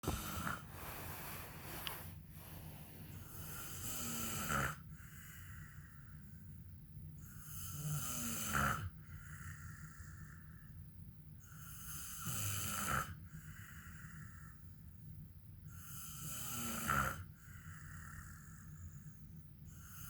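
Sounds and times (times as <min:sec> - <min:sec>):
man snoring: 0:00.0 - 0:00.7, 0:03.3 - 0:04.8, 0:07.4 - 0:10.0, 0:11.6 - 0:13.2, 0:15.9 - 0:18.4
quiet breathing: 0:00.0 - 0:20.0.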